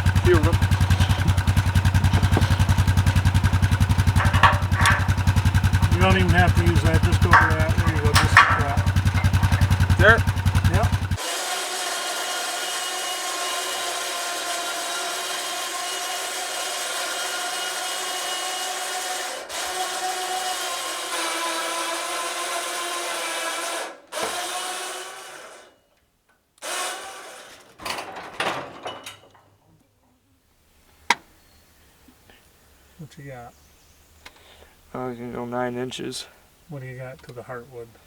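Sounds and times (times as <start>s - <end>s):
knocks: 0.0s - 11.2s
bandsaw blade sawing log: 0.0s - 25.8s, 26.6s - 27.7s.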